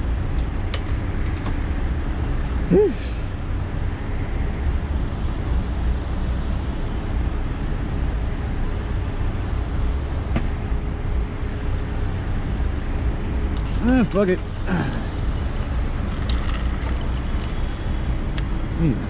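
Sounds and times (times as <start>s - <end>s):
road and wind noise: 0.0s - 19.0s
motorcycle engine rumbling: 12.6s - 18.4s.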